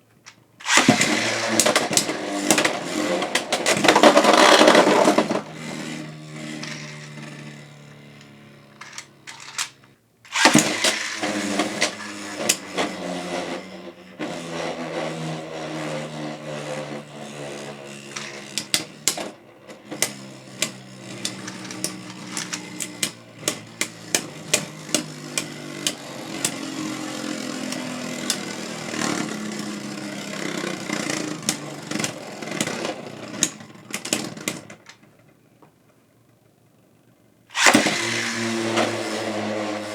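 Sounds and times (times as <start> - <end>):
spinning tops whirring: 0.6 - 34.6, 37.5 - 39.9
spinning top launch: 8.8 - 13.6.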